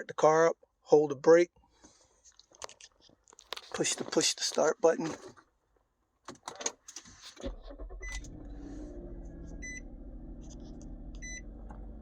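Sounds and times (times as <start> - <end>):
car engine idling: 7.4 - 12.0
car warning chime beeps: 8.0 - 8.3, 9.5 - 10.0, 11.2 - 11.6.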